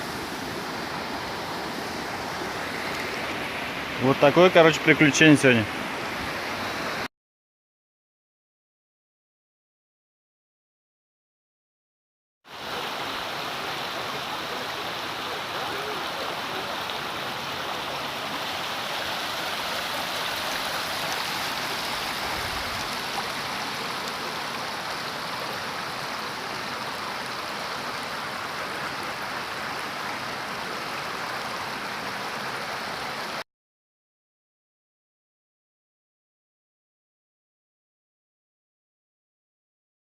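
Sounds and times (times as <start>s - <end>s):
waterfall rushing: 0.0s - 7.1s, 12.5s - 33.4s.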